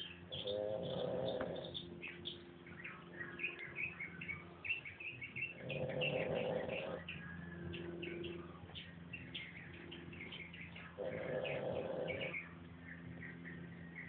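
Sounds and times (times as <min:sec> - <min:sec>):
dog snoring: 0:00.4 - 0:01.8, 0:05.5 - 0:07.1, 0:11.0 - 0:12.4.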